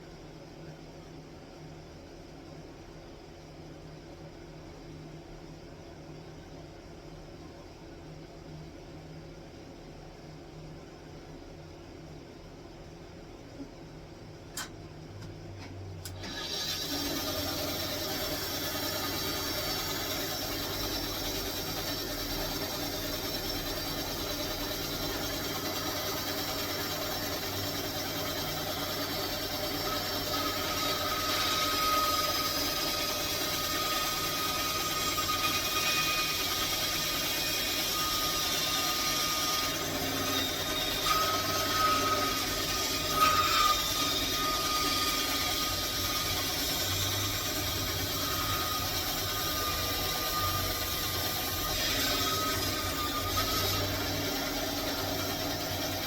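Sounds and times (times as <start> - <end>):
power tool running: 16.0 - 56.0.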